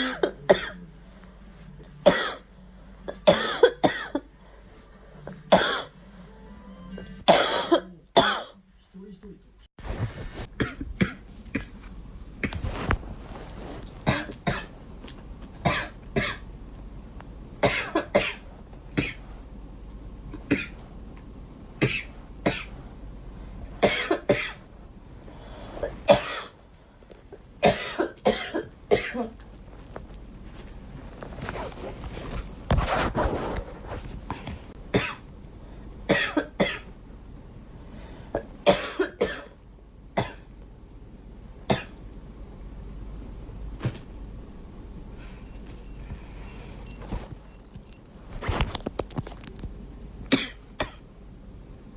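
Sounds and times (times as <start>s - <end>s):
girl coughing: 0.0s - 0.8s, 2.0s - 2.4s, 3.1s - 4.3s, 7.2s - 8.6s, 10.6s - 11.7s, 17.6s - 18.4s, 23.8s - 24.6s, 26.1s - 26.6s, 27.6s - 29.4s, 36.1s - 36.9s, 38.4s - 39.5s, 50.3s - 51.0s.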